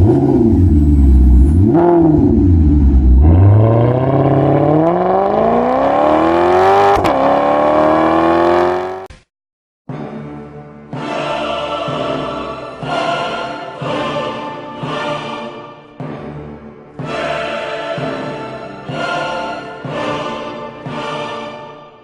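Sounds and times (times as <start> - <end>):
sports car engine accelerating: 0.0 - 9.1.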